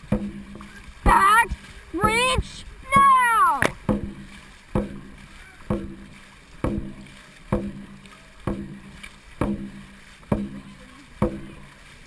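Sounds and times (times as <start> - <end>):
booming drum hits: 3.0 - 4.2, 4.8 - 7.9.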